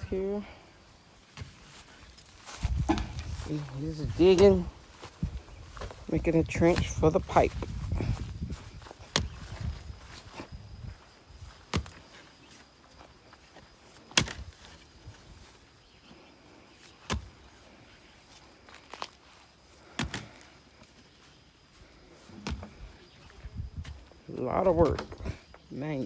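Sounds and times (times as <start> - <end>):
digging tool striking ground: 9.0 - 9.5, 11.6 - 12.1, 14.1 - 14.8, 17.0 - 17.4, 19.9 - 20.4.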